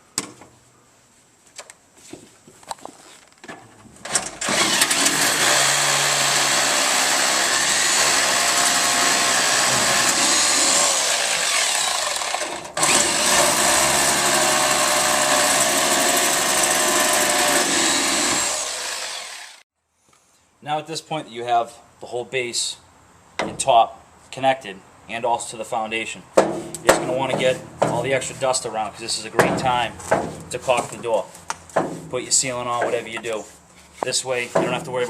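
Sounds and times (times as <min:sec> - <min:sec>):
hammer drill boring concrete: 0:04.4 - 0:19.6.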